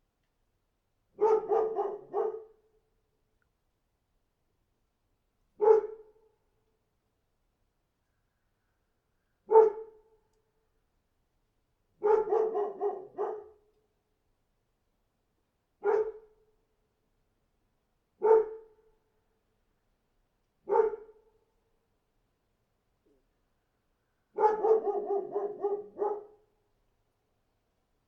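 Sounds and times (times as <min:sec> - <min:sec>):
dog barking: 0:01.2 - 0:02.6, 0:05.6 - 0:06.1, 0:09.5 - 0:10.0, 0:12.0 - 0:13.6, 0:15.8 - 0:16.3, 0:18.2 - 0:18.7, 0:20.7 - 0:21.2, 0:24.4 - 0:26.5.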